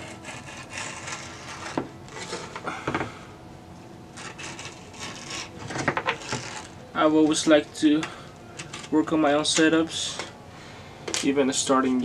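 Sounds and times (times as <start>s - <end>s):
grip tape scraping on wood: 0.0s - 2.6s, 4.1s - 6.8s.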